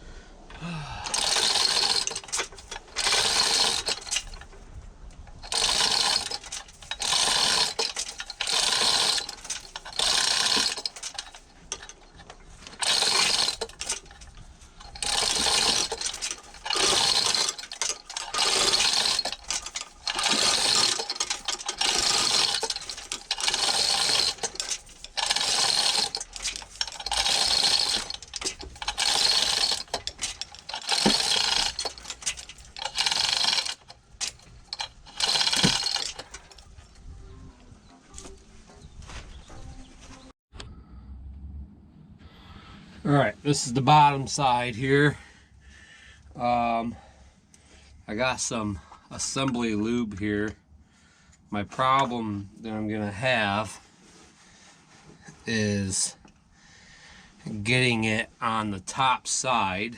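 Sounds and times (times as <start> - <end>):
hand ratchet clicking: 1.0 - 4.6, 5.2 - 36.7.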